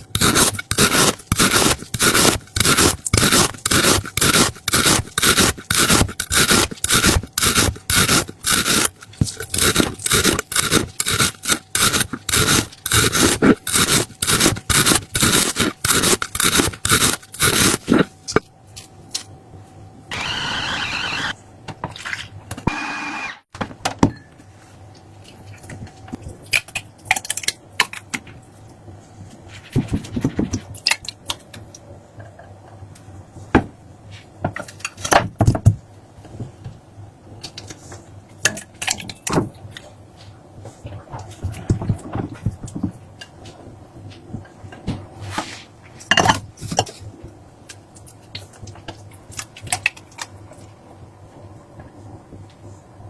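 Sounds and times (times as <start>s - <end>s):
kitchen utensil scraping: 0.0s - 18.4s.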